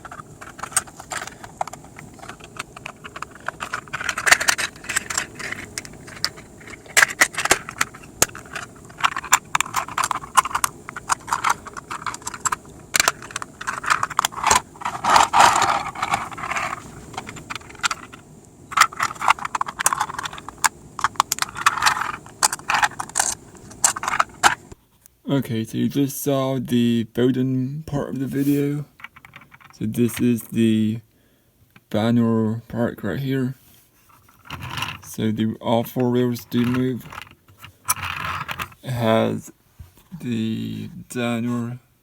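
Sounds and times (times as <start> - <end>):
plastic parts clicking and snapping: 0.0 - 24.7, 29.0 - 29.8, 36.5 - 38.8.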